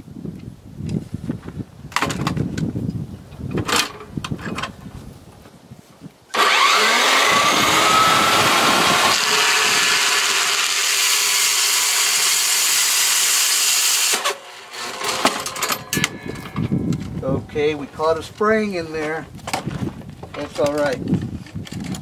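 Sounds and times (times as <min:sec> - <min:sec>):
power tool cutting metal: 0:06.3 - 0:16.2.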